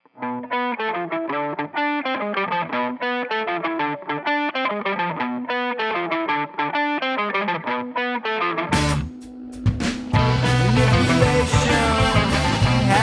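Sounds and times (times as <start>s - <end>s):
electric guitar picked figure: 0.0s - 13.0s
indie rock song: 8.7s - 13.0s.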